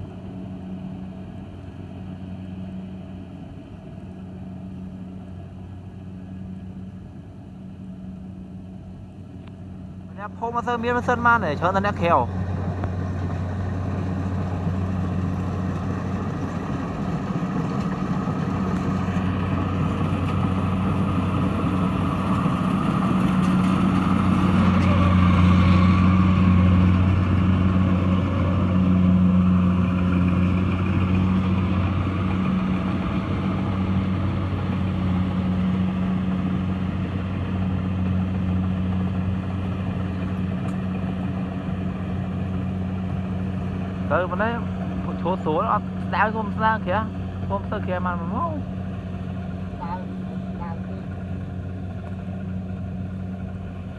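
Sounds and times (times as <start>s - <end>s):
combine harvester diesel engine: 0.0s - 53.9s.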